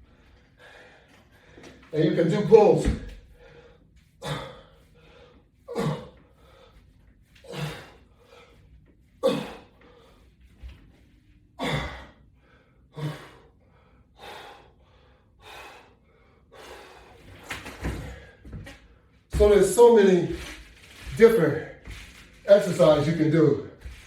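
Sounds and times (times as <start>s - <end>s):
man breathing hard: 0.0s - 1.9s, 3.2s - 10.6s, 11.5s - 19.1s.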